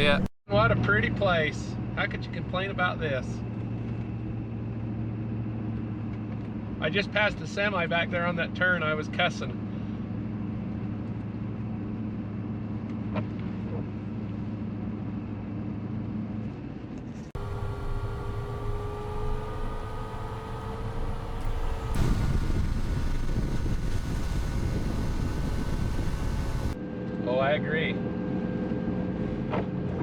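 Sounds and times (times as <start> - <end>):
vehicle engine and road noise: 0.0 - 1.2, 17.4 - 26.8
whine rising in pitch: 17.4 - 26.8.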